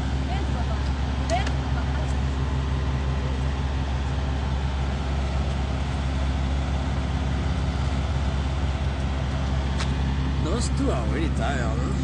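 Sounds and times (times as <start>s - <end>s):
engine idling hum: 0.0s - 12.0s.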